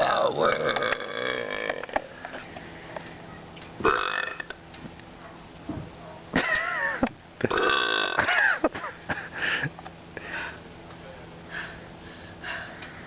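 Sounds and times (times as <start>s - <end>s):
girl burping loudly: 0.0s - 2.0s, 3.8s - 4.5s, 7.4s - 8.7s.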